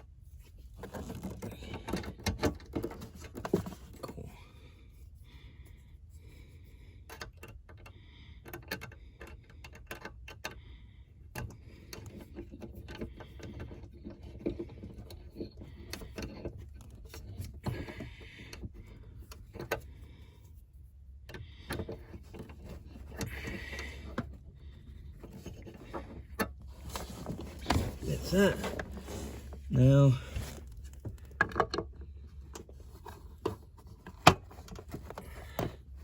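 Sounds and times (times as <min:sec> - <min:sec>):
low steady hum: 0:10.4 - 0:36.0.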